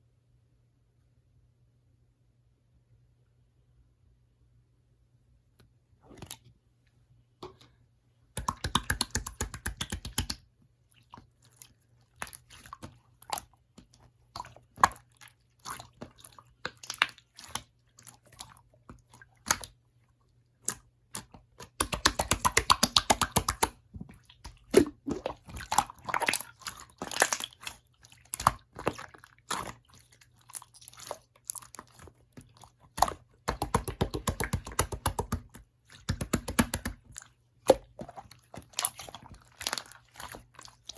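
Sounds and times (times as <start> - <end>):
slime squished by hand: 8.4 - 10.4, 11.0 - 19.8, 20.6 - 40.9.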